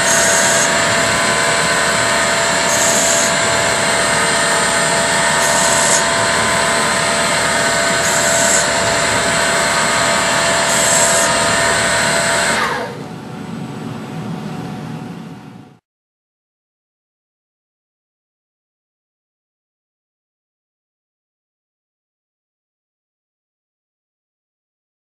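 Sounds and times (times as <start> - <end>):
high-pitched bursts: 0.0 - 12.8
lathe machine whine: 0.0 - 15.8.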